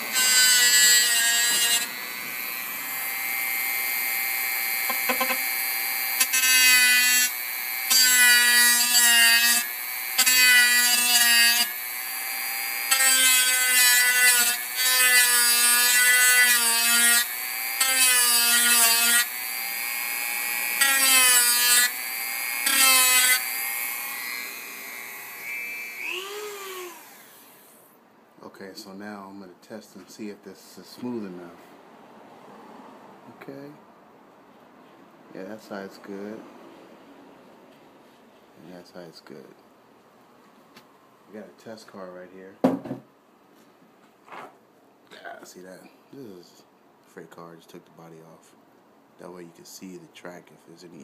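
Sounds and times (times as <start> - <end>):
rotary tool grinding metal: 0.0 - 27.6.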